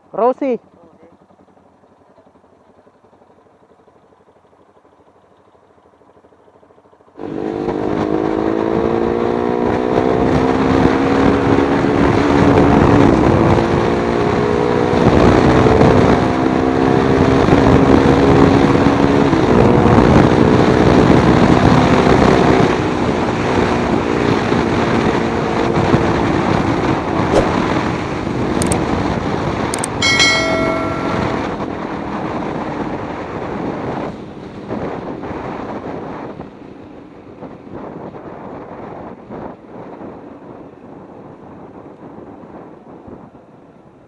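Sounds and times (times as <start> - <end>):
road and wind noise: 0.0 - 44.0
motorcycle engine revving: 5.1 - 18.4.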